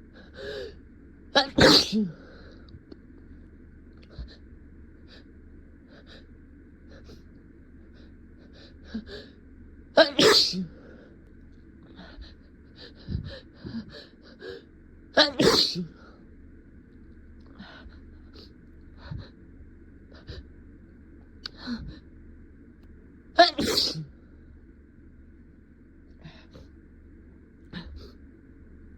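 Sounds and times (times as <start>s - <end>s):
person sneezing: 1.4s - 2.2s, 10.0s - 10.8s, 15.2s - 16.0s, 23.4s - 24.1s.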